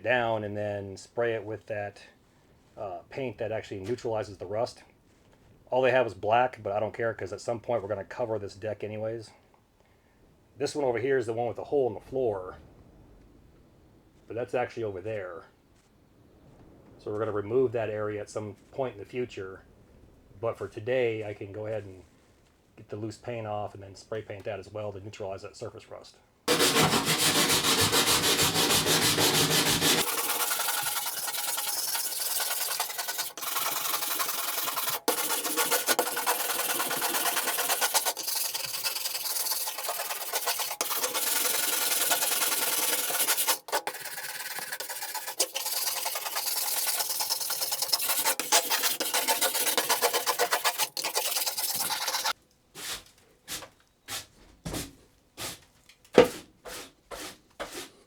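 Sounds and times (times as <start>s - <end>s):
wire brush scrubbing rusty steel: 26.5s - 54.3s, 56.3s - 58.0s.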